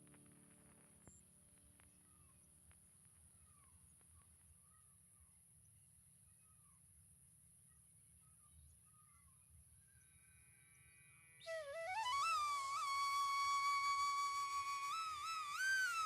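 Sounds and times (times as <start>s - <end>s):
faint bird-like chirps: 7.7s - 11.7s
comic flute-like gliding tone: 11.4s - 16.0s.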